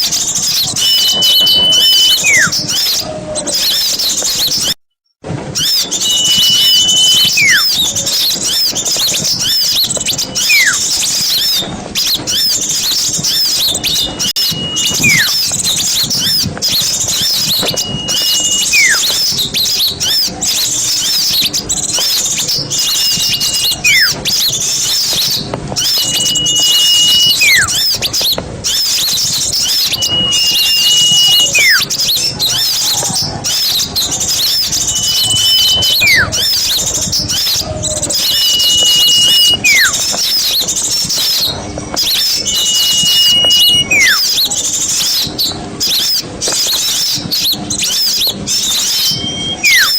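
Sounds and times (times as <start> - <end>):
bird whistle call: 0.0 - 4.8, 5.6 - 49.9
songbirds chirping: 0.0 - 4.8, 5.5 - 49.9.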